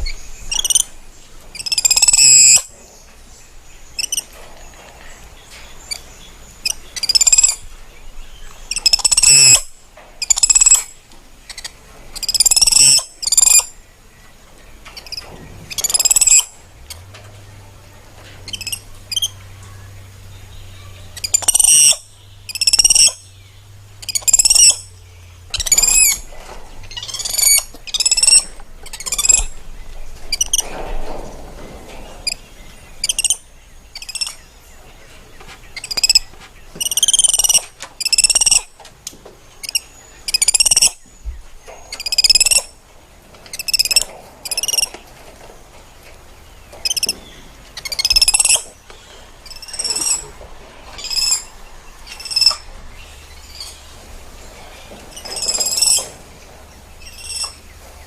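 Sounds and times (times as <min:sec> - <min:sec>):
monkey squealing calls: 0:01.6 - 0:02.6, 0:08.7 - 0:09.6, 0:11.5 - 0:13.6, 0:21.2 - 0:23.2, 0:24.0 - 0:24.8, 0:26.9 - 0:29.5, 0:33.0 - 0:33.4, 0:35.8 - 0:36.2, 0:36.8 - 0:38.7, 0:39.6 - 0:41.0, 0:47.8 - 0:48.6, 0:49.4 - 0:50.2, 0:52.1 - 0:52.6, 0:55.3 - 0:56.0.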